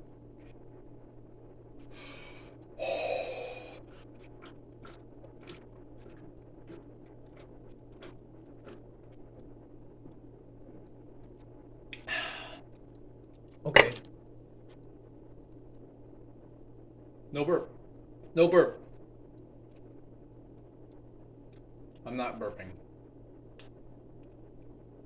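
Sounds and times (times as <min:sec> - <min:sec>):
low room hum: 0:00.0 - 0:25.0
loud breath: 0:02.0 - 0:03.8.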